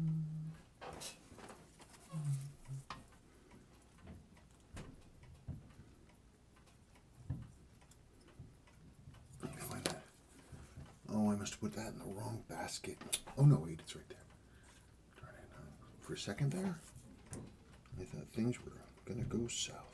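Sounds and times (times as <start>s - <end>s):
short low hums: 0.0s - 0.6s.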